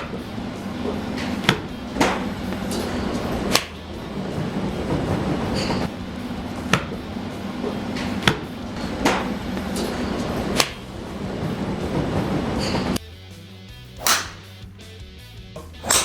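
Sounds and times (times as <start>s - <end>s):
steady background hum: 0.0s - 13.0s
golf club striking balls: 1.2s - 3.8s, 13.8s - 14.9s, 15.6s - 16.0s.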